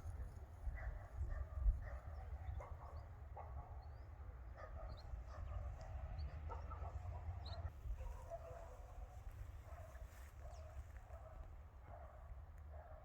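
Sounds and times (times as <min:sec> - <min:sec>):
wind rumble on microphone: 0:00.0 - 0:03.4, 0:04.9 - 0:11.8.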